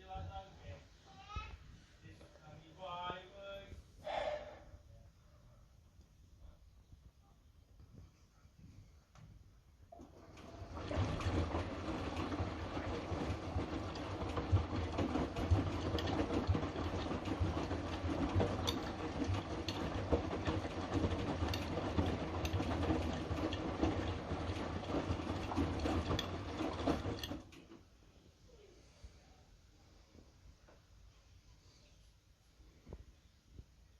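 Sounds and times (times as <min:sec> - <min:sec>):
washing machine motor running: 0:09.9 - 0:28.0
clicks and knocks of tumbling load: 0:10.0 - 0:27.9.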